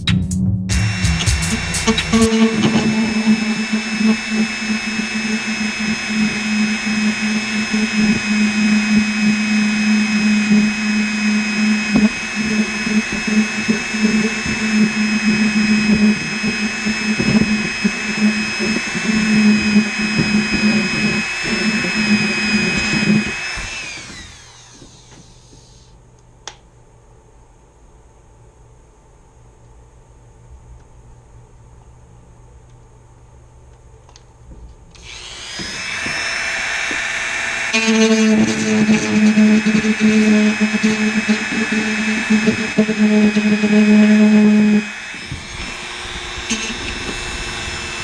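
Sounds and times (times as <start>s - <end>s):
rotary tool whining: 0.9s - 25.9s, 35.0s - 48.0s.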